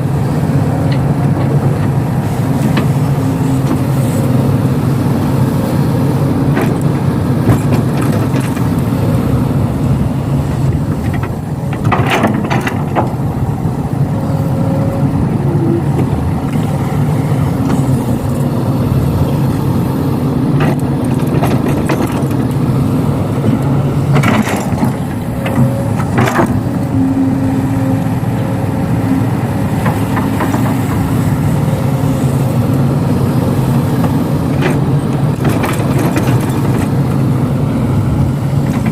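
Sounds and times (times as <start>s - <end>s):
excavator diesel engine running: 0.0s - 38.9s
metal clanks and rattles: 10.7s - 13.2s, 24.1s - 26.6s.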